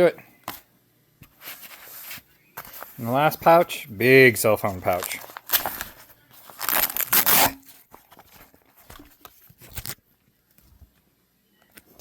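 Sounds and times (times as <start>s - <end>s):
rustling: 1.3s - 3.4s, 4.4s - 10.0s
nylon pouch ripping: 4.7s - 8.3s.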